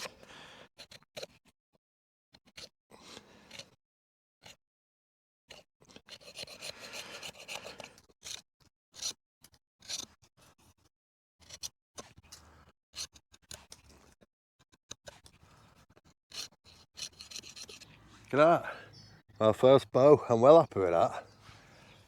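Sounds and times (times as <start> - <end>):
knife scraping wooden stick: 2.4 - 3.8, 5.5 - 18.3.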